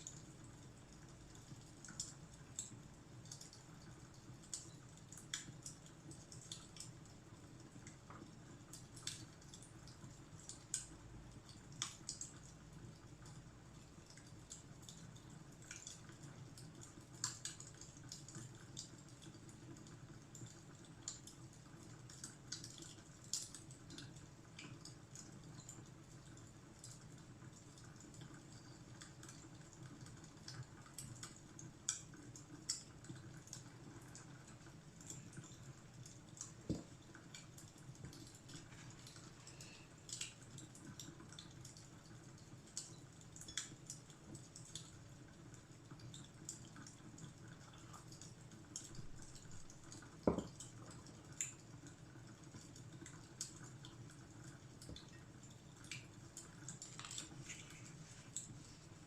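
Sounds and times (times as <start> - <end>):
fireplace crackling: 14.1 - 59.0.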